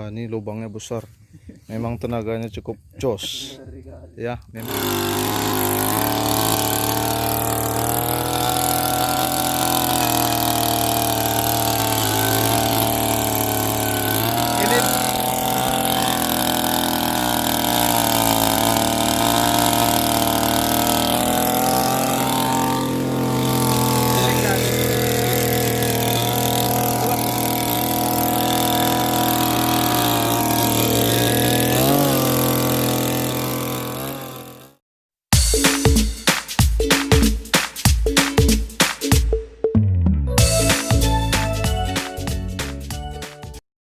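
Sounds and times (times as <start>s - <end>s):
earth auger engine running: 4.6s - 34.8s.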